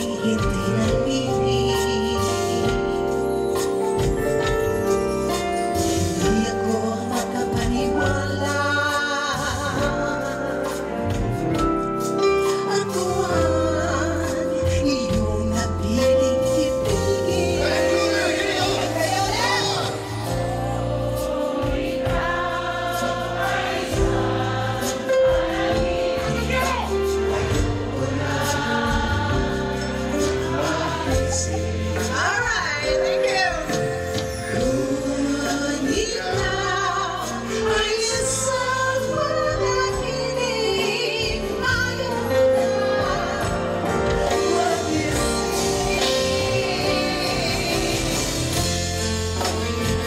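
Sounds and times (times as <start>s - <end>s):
woman singing: 0.0s - 3.4s, 6.1s - 22.4s, 30.5s - 50.0s
pop music with group vocals: 0.0s - 50.0s.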